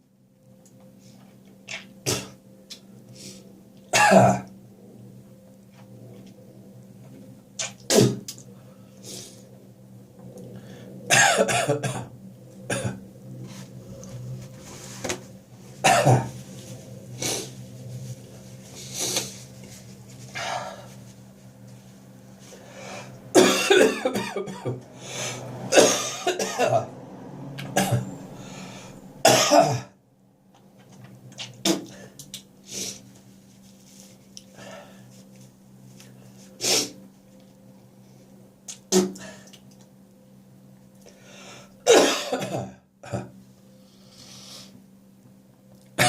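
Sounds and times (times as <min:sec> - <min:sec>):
low hum: 0:00.0 - 0:41.9
person coughing: 0:04.0 - 0:04.5, 0:11.1 - 0:12.1, 0:15.8 - 0:16.3, 0:23.4 - 0:24.8, 0:25.7 - 0:26.9, 0:29.2 - 0:29.9, 0:41.9 - 0:43.3.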